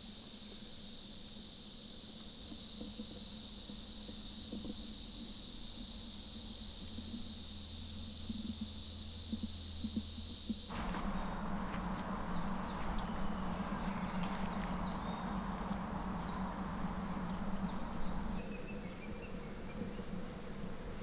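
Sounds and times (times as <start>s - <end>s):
steady low background rush: 10.7s - 18.5s.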